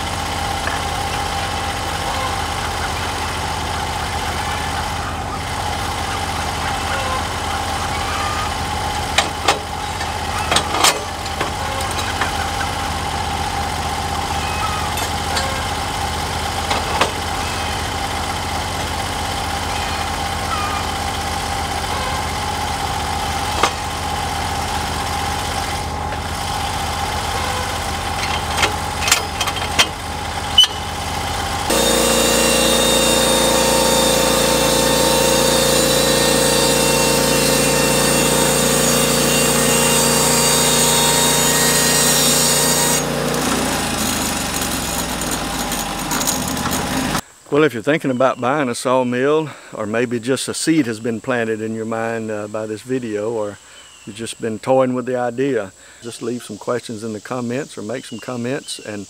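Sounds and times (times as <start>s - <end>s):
bandsaw mill engine running: 0.0s - 47.2s.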